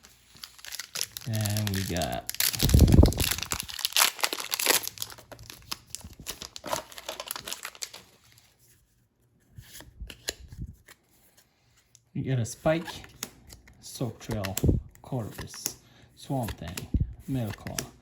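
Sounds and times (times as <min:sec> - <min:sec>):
foil wrapper crinkling and tearing: 0:00.0 - 0:08.4.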